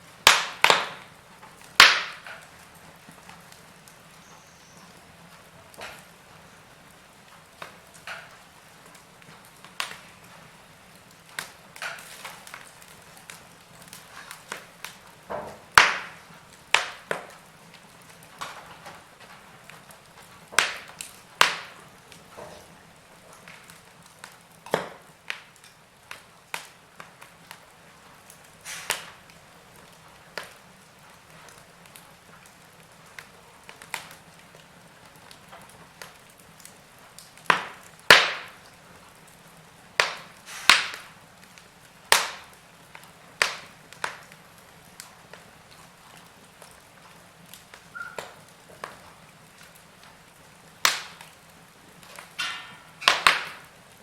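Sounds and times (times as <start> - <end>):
faint steady hiss: 0.0 - 54.0
wood fire crackling: 0.0 - 54.0.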